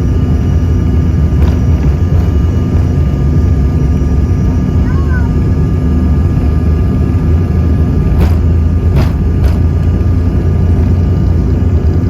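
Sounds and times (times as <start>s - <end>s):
airliner engine drone: 0.0s - 12.0s
knocks in cabin: 8.1s - 9.9s.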